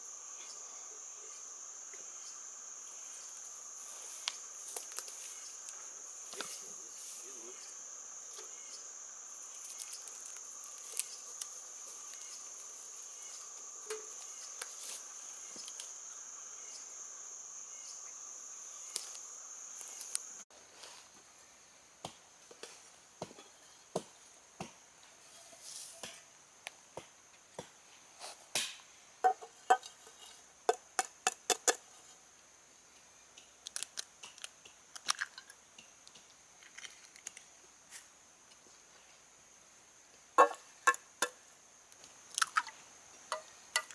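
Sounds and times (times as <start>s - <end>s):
insects chirring: 0.0s - 43.9s.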